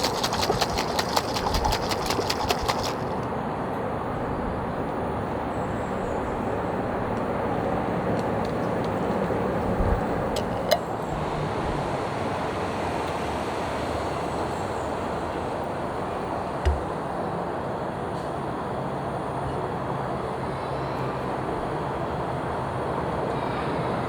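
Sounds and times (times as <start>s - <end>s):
vehicle rumble: 0.0s - 18.4s
low thump: 16.6s - 16.9s.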